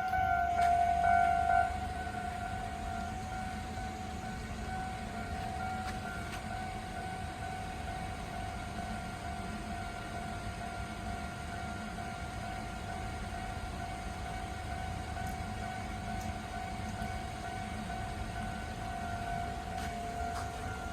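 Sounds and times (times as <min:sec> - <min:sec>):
level crossing alarm tone: 0:00.0 - 0:08.5.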